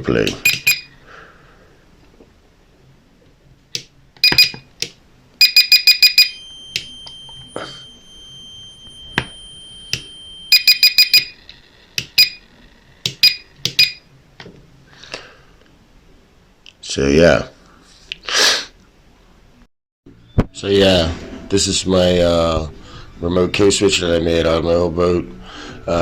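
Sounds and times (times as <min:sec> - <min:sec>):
rapid short high beeps: 0:00.4 - 0:00.9, 0:05.4 - 0:06.9, 0:10.5 - 0:11.4
faint steady beep: 0:00.4 - 0:01.0, 0:04.2 - 0:04.6, 0:05.4 - 0:11.4, 0:12.2 - 0:12.5, 0:13.2 - 0:14.1.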